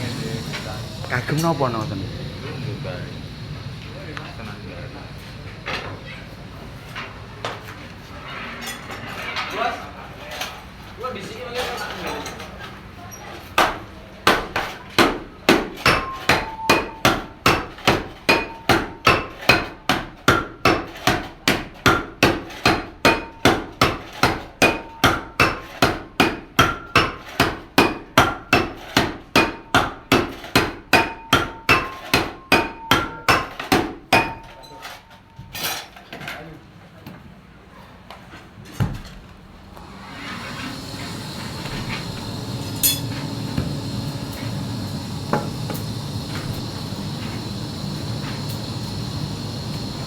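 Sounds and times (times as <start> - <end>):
hammer striking gong metal: 15.0 - 20.8, 21.5 - 28.7, 29.4 - 34.6.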